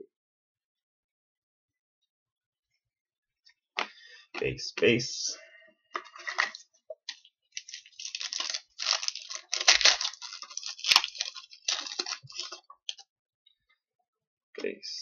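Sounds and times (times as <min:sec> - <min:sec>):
cards rustling and sliding: 0:06.0 - 0:13.0.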